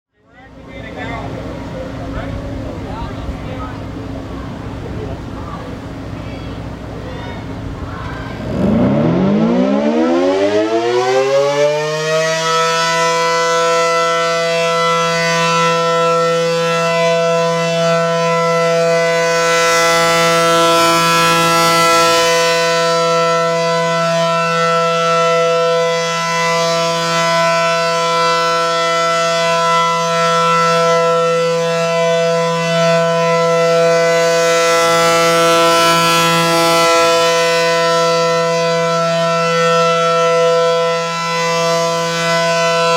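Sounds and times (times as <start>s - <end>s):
warning siren winding up: 8.4s - 27.9s.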